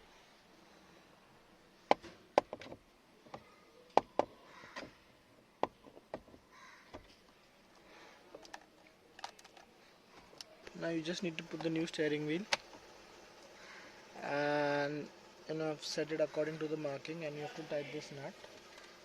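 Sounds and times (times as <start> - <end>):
hard parts knocking and clicking: 1.9 - 3.4.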